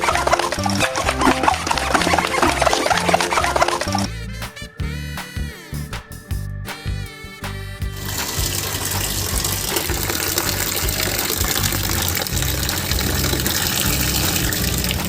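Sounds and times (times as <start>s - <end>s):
low bass notes: 0.0s - 15.0s
water running: 7.9s - 15.0s.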